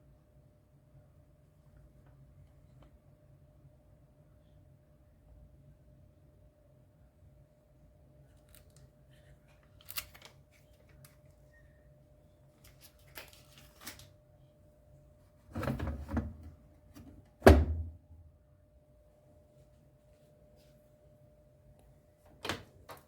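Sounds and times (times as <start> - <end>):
thump: 17.4 - 18.0.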